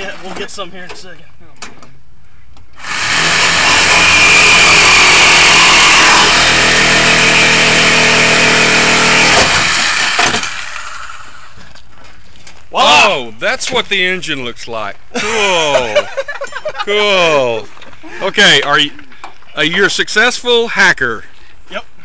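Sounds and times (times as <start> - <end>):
power tool cutting sheet metal: 2.8 - 11.2.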